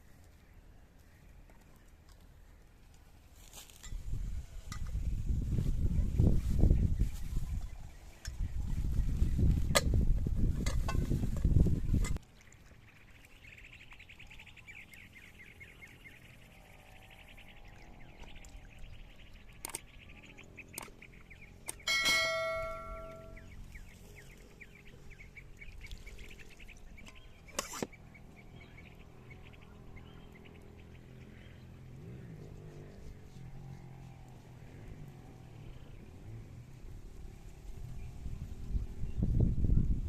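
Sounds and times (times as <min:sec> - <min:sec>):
birds chirping: 0:05.9 - 0:34.9
ringing metallic strike: 0:21.9 - 0:23.5.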